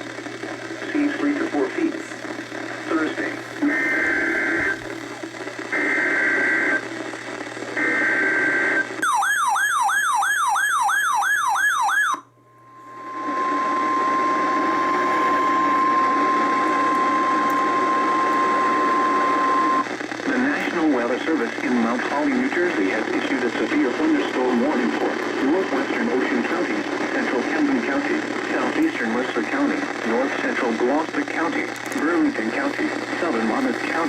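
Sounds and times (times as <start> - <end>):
radio reception hiss: 0.0 - 9.0, 12.7 - 34.0
steady warning alarm tone: 7.8 - 19.8.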